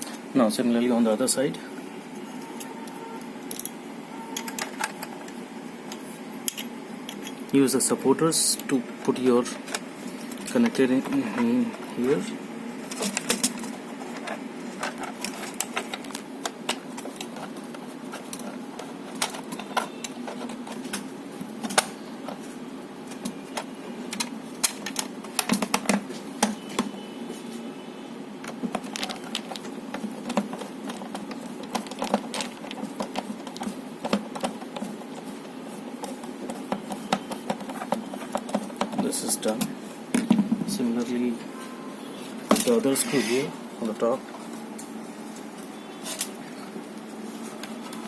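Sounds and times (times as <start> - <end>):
steady low hum: 0.0 - 48.0
plastic parts clicking and tapping: 2.5 - 7.4, 12.9 - 22.5, 23.1 - 27.0, 28.4 - 40.8.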